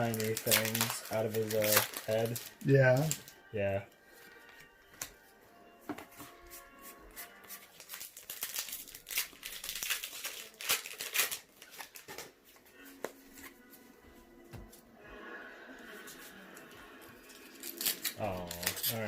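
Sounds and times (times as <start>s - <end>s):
foil wrapper crinkling and tearing: 0.0s - 3.4s, 7.2s - 12.4s, 17.3s - 19.0s.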